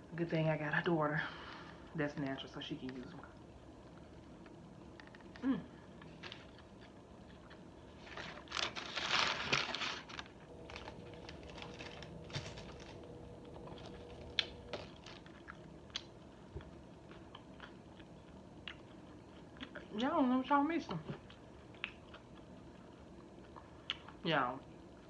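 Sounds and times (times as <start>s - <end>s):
loud crunch of food: 6.0s - 16.1s
person chewing: 10.5s - 19.9s.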